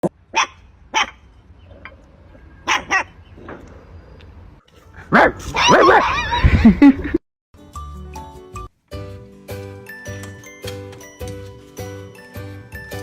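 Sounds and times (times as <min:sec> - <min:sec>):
dog barking: 0:00.3 - 0:01.2, 0:02.6 - 0:03.1, 0:05.1 - 0:06.2.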